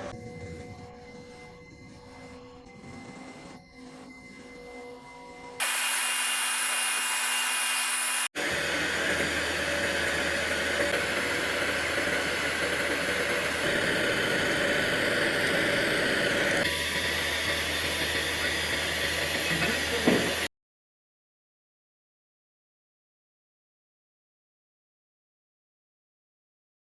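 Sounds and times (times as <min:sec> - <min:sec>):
welding machine hissing: 0:05.6 - 0:20.5.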